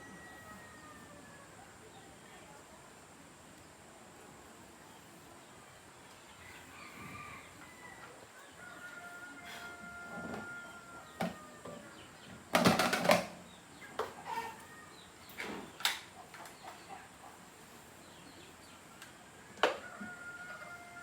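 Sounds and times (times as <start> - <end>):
sharp knocks and rattles: 12.5 - 13.4.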